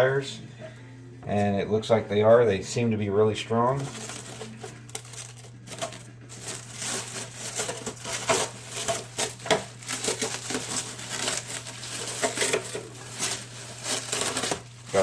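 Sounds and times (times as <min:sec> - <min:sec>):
packaging crinkling: 0:03.7 - 0:15.0.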